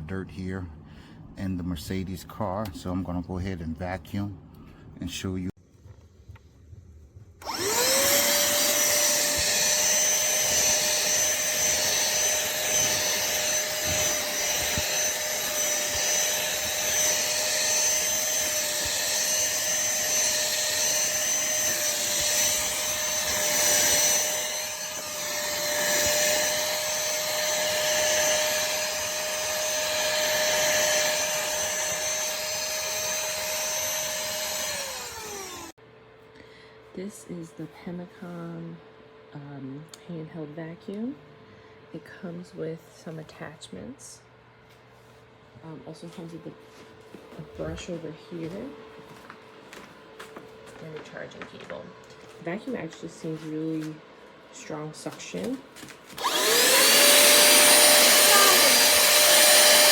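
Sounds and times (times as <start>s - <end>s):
handheld vacuum cleaner whine: 7.2s - 35.8s, 55.4s - 59.9s.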